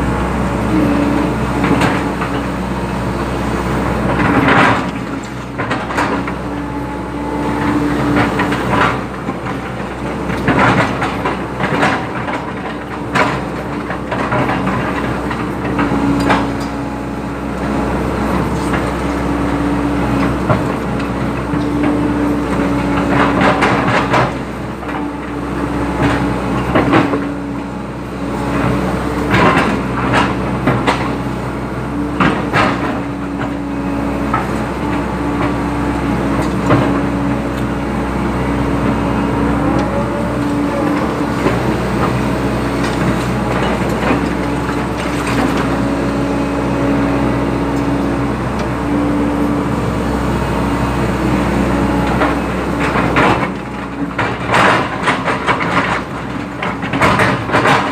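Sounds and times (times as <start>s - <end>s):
excavator diesel engine: 0.0s - 57.9s
metal clanks and knocks: 7.6s - 16.8s, 52.0s - 57.9s.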